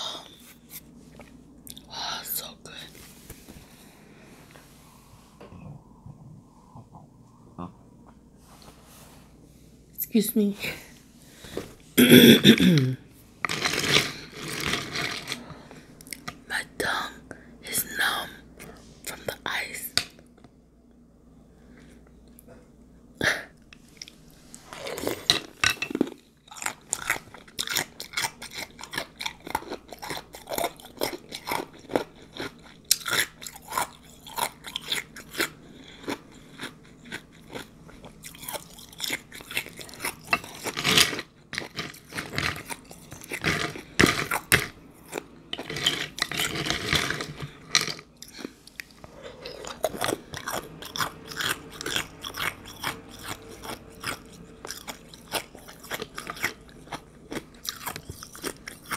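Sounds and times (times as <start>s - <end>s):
crunching and chewing ice: 13.5s - 15.4s, 24.0s - 58.9s.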